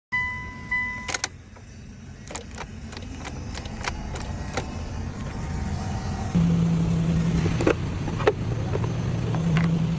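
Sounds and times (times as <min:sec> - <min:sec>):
steady electronic beep: 0:00.1 - 0:01.3
low engine rumble: 0:00.2 - 0:09.9
sharp irregular clicks: 0:02.2 - 0:04.8.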